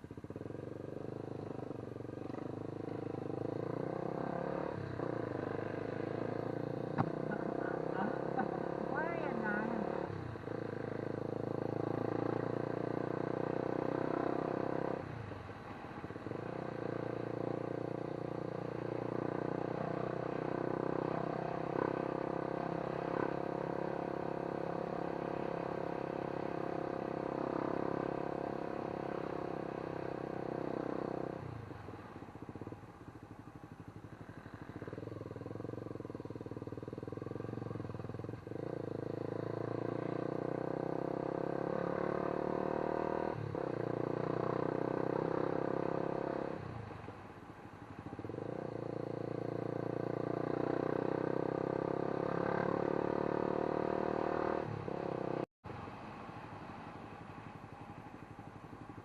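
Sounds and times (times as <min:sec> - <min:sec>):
vehicle engine running: 0:06.4 - 0:11.1.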